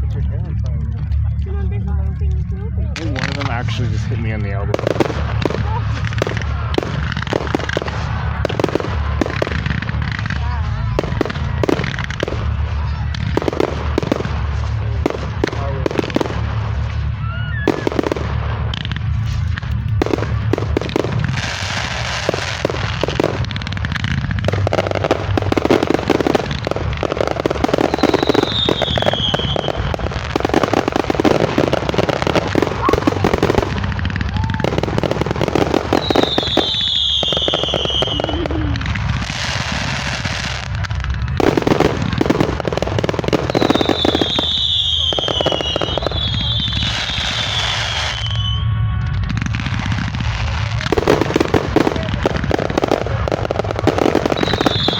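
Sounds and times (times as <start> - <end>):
fireworks crackling and popping: 0.0 - 54.9
firework whistles: 16.0 - 54.9.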